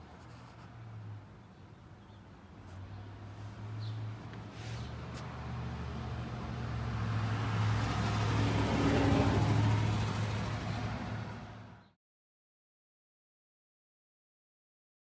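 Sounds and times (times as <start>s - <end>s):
road and tyre noise: 0.0s - 11.9s.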